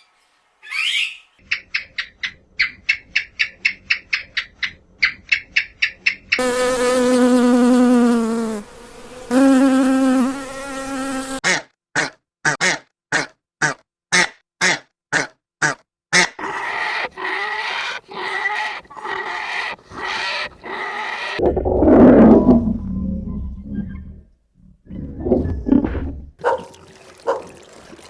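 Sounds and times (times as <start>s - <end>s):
insect buzzing: 6.4s - 11.4s.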